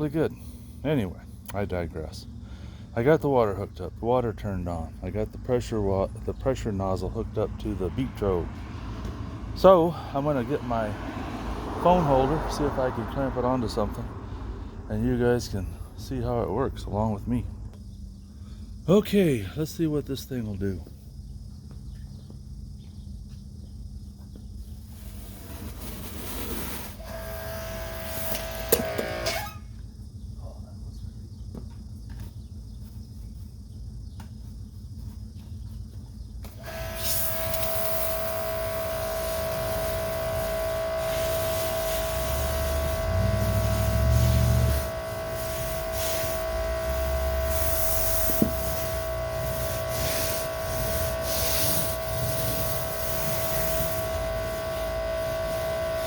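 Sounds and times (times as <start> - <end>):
pressure washer motor whining: 7.2 - 16.8, 26.5 - 29.6, 36.5 - 56.0.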